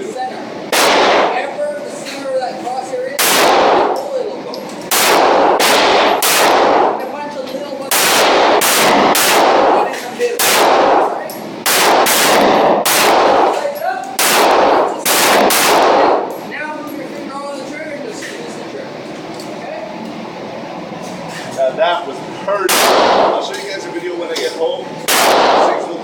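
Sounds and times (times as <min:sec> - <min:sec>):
pistol shots with heavy echo: 0:00.7 - 0:01.6, 0:03.2 - 0:04.2, 0:04.9 - 0:07.0, 0:07.9 - 0:16.4, 0:22.7 - 0:23.6, 0:25.1 - 0:26.0.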